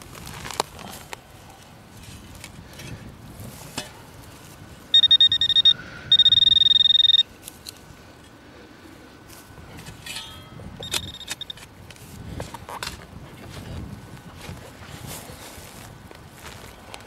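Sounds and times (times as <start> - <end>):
metal detector beeping: 4.9 - 7.3, 10.8 - 11.6.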